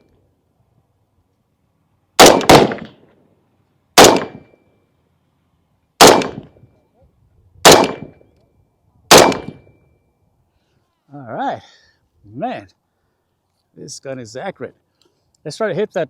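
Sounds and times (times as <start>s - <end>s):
rifle gunshots: 2.2s - 3.0s, 4.0s - 4.5s, 6.0s - 6.5s, 7.6s - 8.2s, 9.1s - 9.6s.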